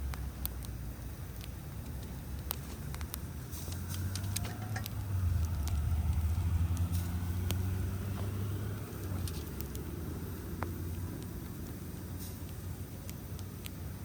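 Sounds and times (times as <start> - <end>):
campfire crackling and popping: 0.0 - 14.0
car passing by: 3.5 - 11.0.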